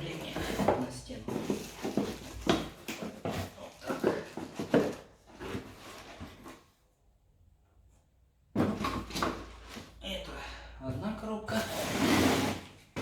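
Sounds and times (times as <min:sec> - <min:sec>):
cardboard boxes knocking and scraping: 0:00.0 - 0:06.6, 0:08.5 - 0:09.9.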